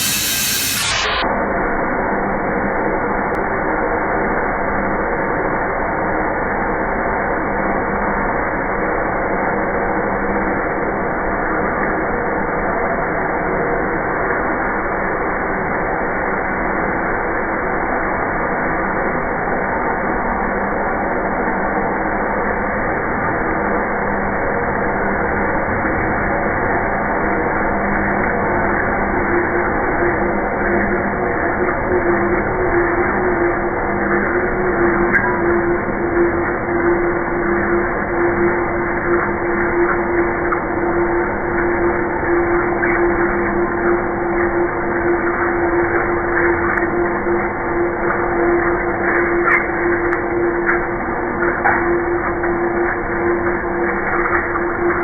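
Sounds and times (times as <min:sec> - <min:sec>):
milling machine drilling: 0:00.0 - 0:01.2.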